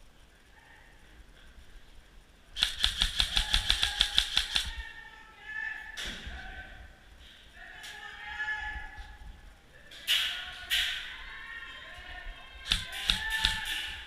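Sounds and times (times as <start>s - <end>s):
airsoft gun firing: 2.6s - 4.8s, 12.7s - 14.0s.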